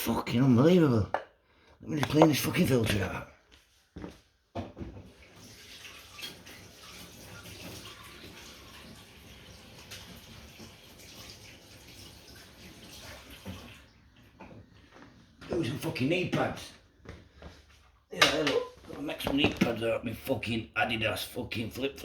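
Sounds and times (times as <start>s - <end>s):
water running from a tap: 5.0s - 14.4s.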